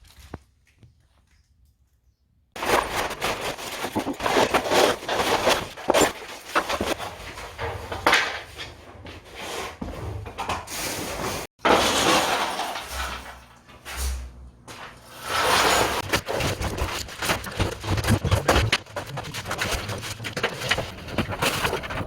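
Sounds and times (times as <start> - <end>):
scraping noise: 2.6 - 10.1, 15.1 - 22.0
knocks and clatter: 16.0 - 22.0.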